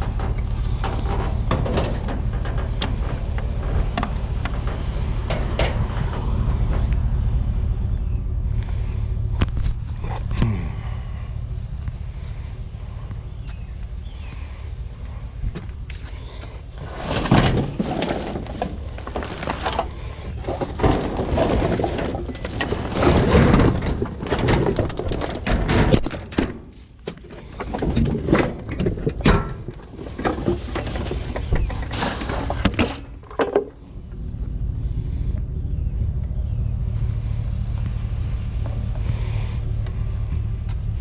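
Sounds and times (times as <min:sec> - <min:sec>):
hard objects clattering and crashing: 0:00.0 - 0:06.9, 0:16.1 - 0:33.9
vehicle engine running: 0:00.0 - 0:25.7, 0:26.7 - 0:41.0.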